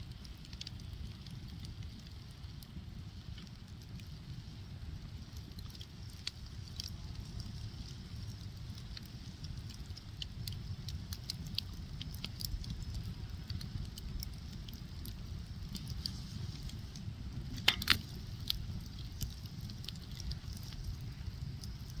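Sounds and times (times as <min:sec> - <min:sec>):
fire crackling and popping: 0:00.0 - 0:22.0
low rumble of flames: 0:00.0 - 0:22.0.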